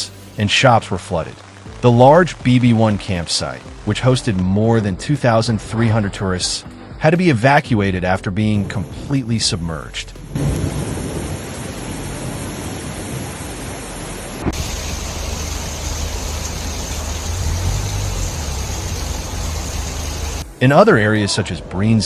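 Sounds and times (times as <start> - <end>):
heavy rain hiss: 0.0 - 21.4
low rumble: 10.0 - 20.5.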